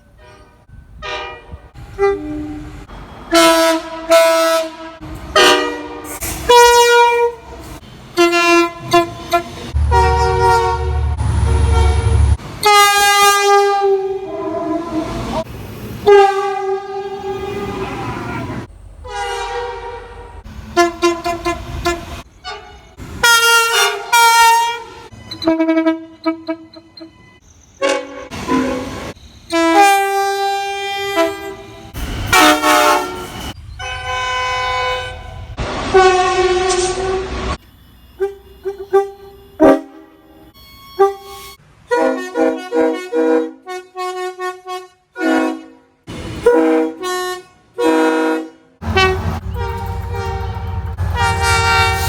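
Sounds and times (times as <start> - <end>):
locomotive air horn blasts: 0.0 - 7.6, 8.2 - 27.1, 27.8 - 52.0
heavy engine rumble: 4.7 - 12.7, 48.8 - 52.0.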